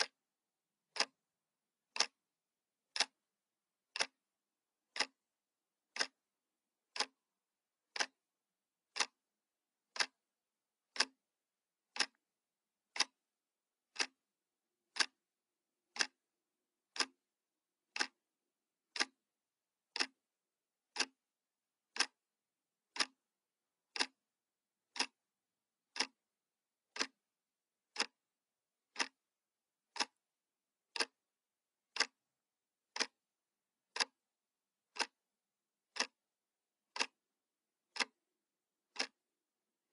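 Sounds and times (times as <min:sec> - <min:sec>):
clock ticking: 0:00.0 - 0:00.2, 0:00.8 - 0:01.2, 0:01.8 - 0:02.2, 0:02.9 - 0:07.3, 0:07.9 - 0:08.3, 0:08.9 - 0:09.3, 0:09.9 - 0:11.3, 0:11.9 - 0:12.2, 0:12.8 - 0:13.2, 0:13.8 - 0:14.2, 0:14.9 - 0:15.2, 0:15.9 - 0:16.2, 0:16.9 - 0:17.2, 0:17.9 - 0:18.2, 0:18.9 - 0:19.2, 0:19.9 - 0:20.3, 0:20.9 - 0:21.2, 0:21.8 - 0:24.3, 0:24.9 - 0:25.3, 0:25.9 - 0:26.3, 0:26.9 - 0:27.2, 0:27.9 - 0:29.3, 0:29.9 - 0:30.2, 0:30.9 - 0:31.3, 0:31.9 - 0:32.3, 0:32.9 - 0:33.2, 0:33.9 - 0:36.2, 0:36.9 - 0:37.3, 0:37.9 - 0:38.3, 0:38.9 - 0:39.3.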